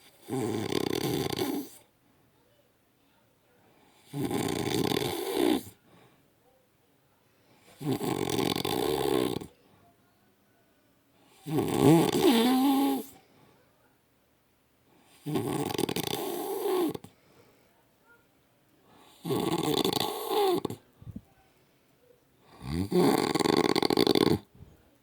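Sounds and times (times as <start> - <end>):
man snoring: 0.2 - 1.8, 4.1 - 5.7, 7.8 - 9.5, 11.5 - 13.1, 15.2 - 17.0, 19.1 - 20.8, 22.6 - 24.5.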